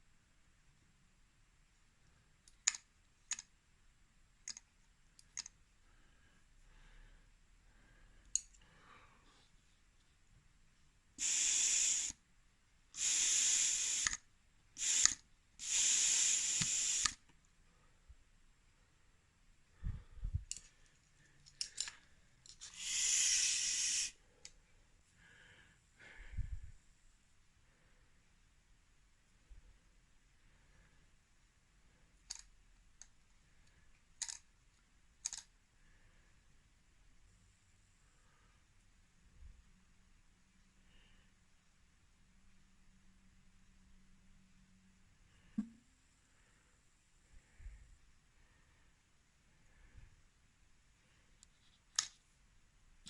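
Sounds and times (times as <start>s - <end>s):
pressurised spray hissing: 11.2s - 12.2s, 13.0s - 14.2s, 14.8s - 17.2s, 22.6s - 24.2s
short sharp clicks: 13.7s - 14.2s
spray nozzle click: 13.8s - 14.2s, 16.4s - 17.2s.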